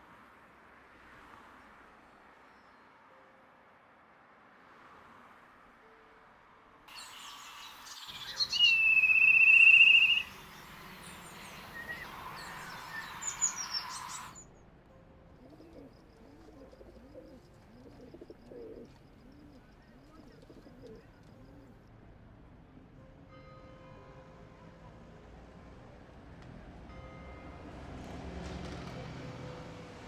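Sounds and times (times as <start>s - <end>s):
small birds chirping: 6.9s - 14.5s
long whistled note: 7.0s - 14.4s
pigeons cooing: 15.5s - 21.6s.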